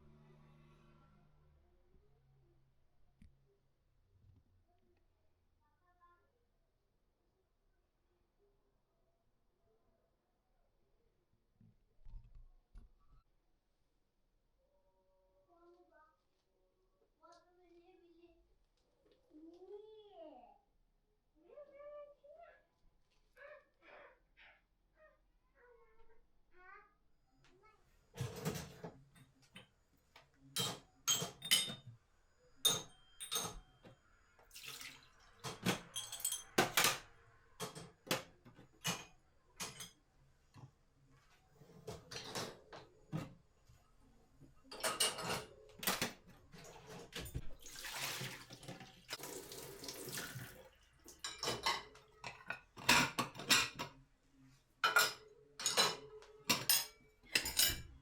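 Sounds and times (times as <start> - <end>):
dishes clinking in sink: 30.6 - 32.0, 32.6 - 34.0, 34.6 - 40.0, 41.8 - 43.3, 44.6 - 54.0, 54.8 - 58.0.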